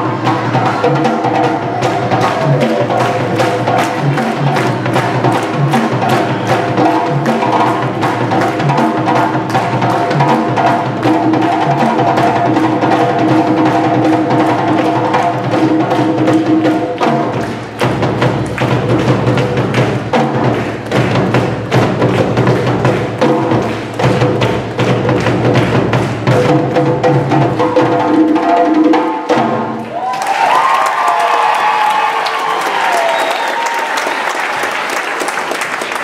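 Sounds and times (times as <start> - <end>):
percussion music with drums: 0.0 - 30.9.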